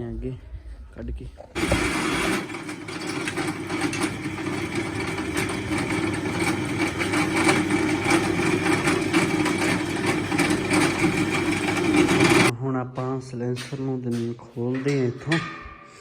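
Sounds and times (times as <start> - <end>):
tractor engine running: 1.6 - 12.5.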